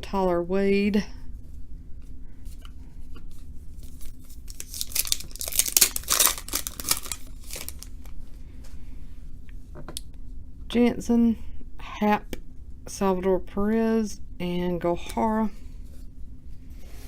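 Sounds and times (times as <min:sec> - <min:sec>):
wrapper tearing and crinkling: 0:03.8 - 0:08.1.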